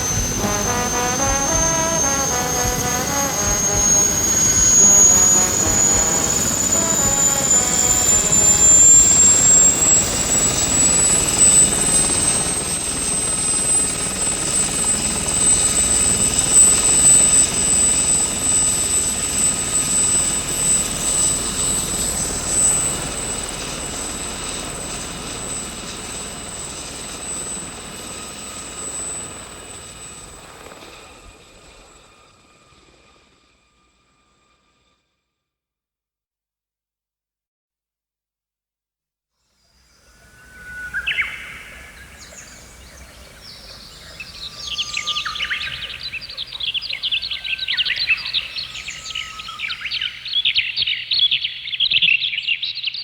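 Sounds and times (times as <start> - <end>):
aircraft engine rumble and whine: 0.0 - 30.8.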